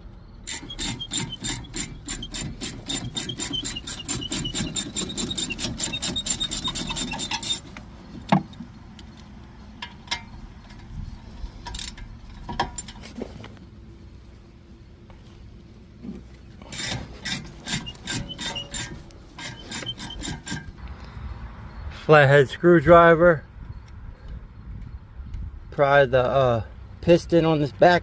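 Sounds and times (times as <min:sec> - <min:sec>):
hand tool rasping clicks on metal: 0:00.5 - 0:08.4, 0:16.7 - 0:20.8.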